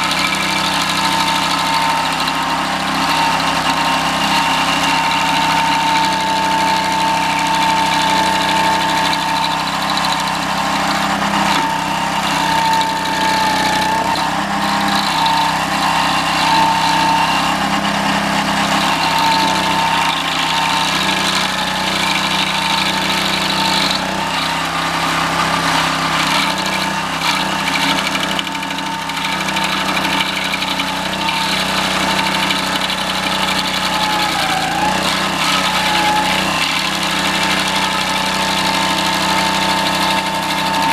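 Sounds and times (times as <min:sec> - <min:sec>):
small engine running steadily: 0:00.0 - 0:40.9.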